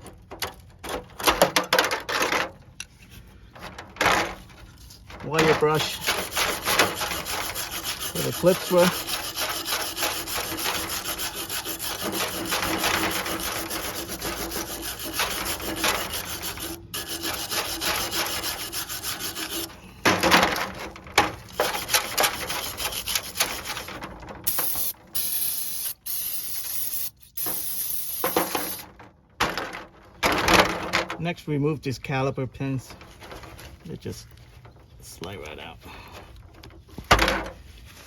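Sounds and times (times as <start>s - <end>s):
wire brush scrubbing metal: 5.3s - 28.9s.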